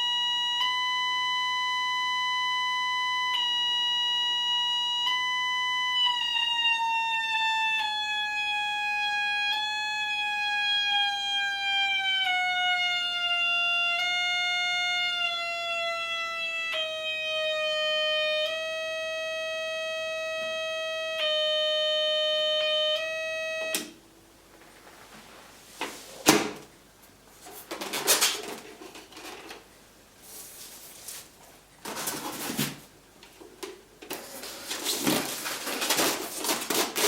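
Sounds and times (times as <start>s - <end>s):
buzzy electronic oscillator tone: 0.0s - 23.9s.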